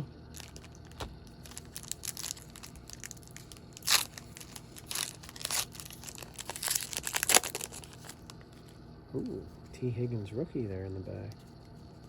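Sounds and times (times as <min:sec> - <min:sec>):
card pack wrapper tearing: 0:00.3 - 0:08.5.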